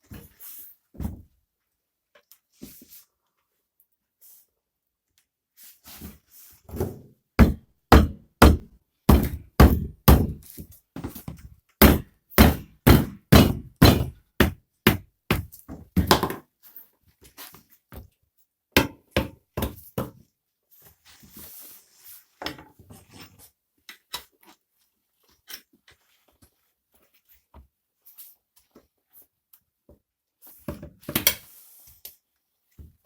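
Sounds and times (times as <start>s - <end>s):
hammer knocking: 7.4s - 10.4s, 11.8s - 15.4s.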